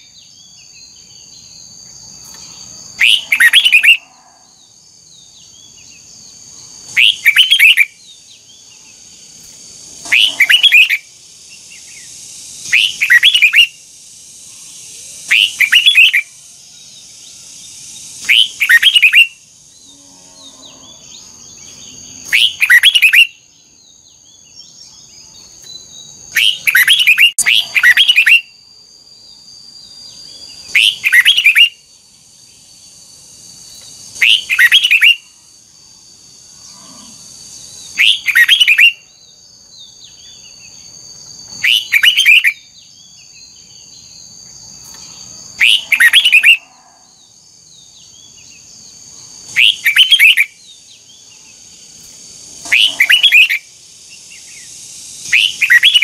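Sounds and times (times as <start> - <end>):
bird singing whistled phrases: 3.0 - 4.0, 7.0 - 8.0, 12.7 - 13.8, 15.3 - 16.3, 22.4 - 23.4, 25.8 - 28.6, 30.7 - 31.8, 34.2 - 35.2, 41.6 - 42.7, 49.6 - 50.6, 55.4 - 56.0.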